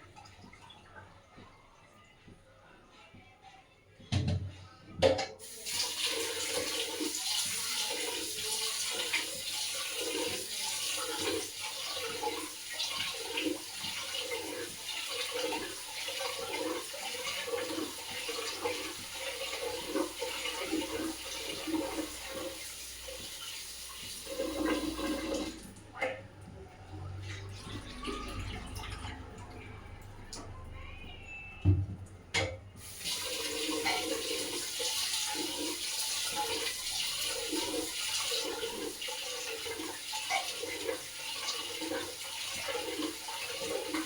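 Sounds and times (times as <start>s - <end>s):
knock: 4.1s - 5.3s
tap water running into pot: 5.4s - 26.4s, 32.4s - 44.0s.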